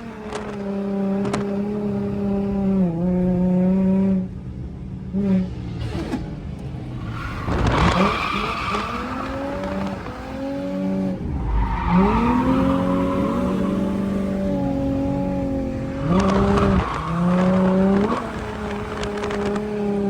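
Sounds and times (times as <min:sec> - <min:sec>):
tyres squealing and skidding: 0:06.8 - 0:19.7
car engine revving: 0:06.8 - 0:20.0.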